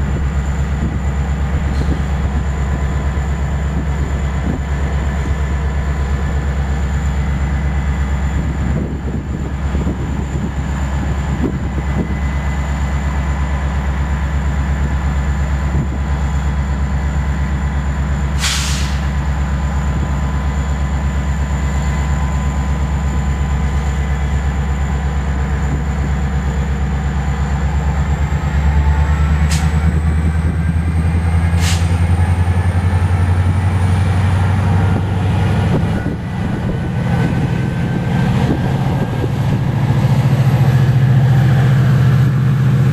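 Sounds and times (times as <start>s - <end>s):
locomotive engine hum: 0.0s - 42.9s
air hissing: 18.4s - 19.1s.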